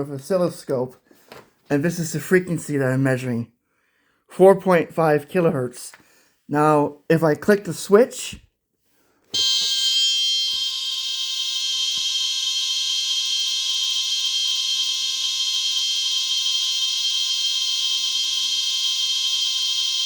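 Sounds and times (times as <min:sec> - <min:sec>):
high-pitched alarm buzzer tone: 0:09.4 - 0:20.0.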